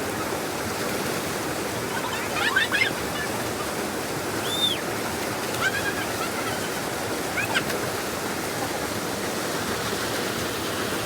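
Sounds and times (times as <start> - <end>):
waterfall rushing: 0.0 - 11.0
high-pitched calls: 4.4 - 4.8, 5.5 - 7.7.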